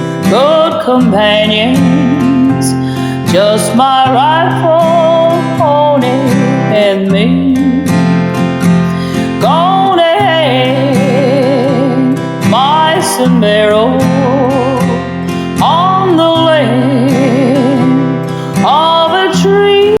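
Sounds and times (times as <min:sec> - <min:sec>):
strummed acoustic guitar: 0:00.0 - 0:20.0
wordless country-style singing: 0:00.0 - 0:20.0.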